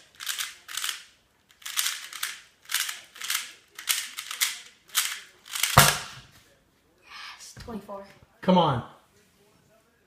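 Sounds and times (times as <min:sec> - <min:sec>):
plastic puzzle cube clacking: 0:00.0 - 0:05.8.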